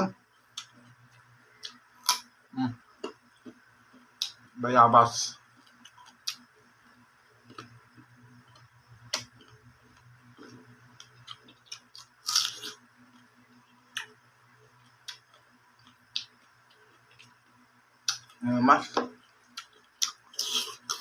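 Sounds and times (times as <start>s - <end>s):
person crunching fruit: 7.4s - 13.3s, 19.5s - 21.0s.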